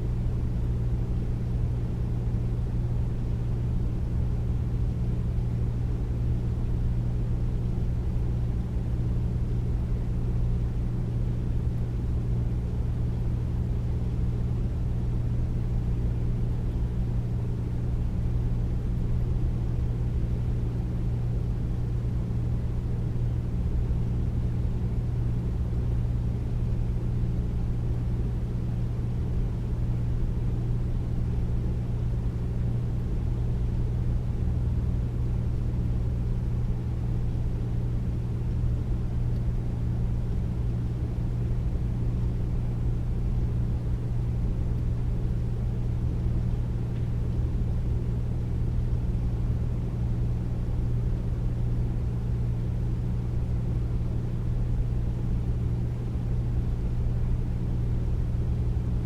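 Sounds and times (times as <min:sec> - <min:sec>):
air conditioner humming: 0:00.0 - 0:59.0.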